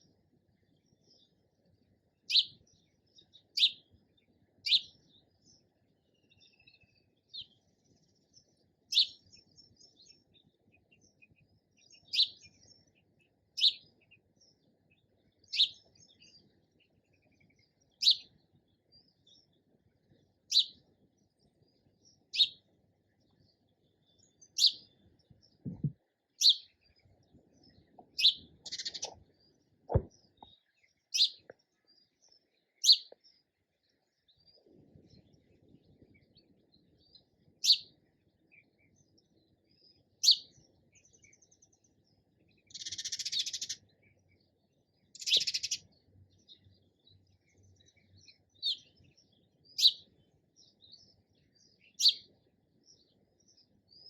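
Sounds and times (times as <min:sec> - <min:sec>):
sparrow chirping: 0:00.0 - 0:54.0
low thumps: 0:25.6 - 0:26.0, 0:29.9 - 0:30.1.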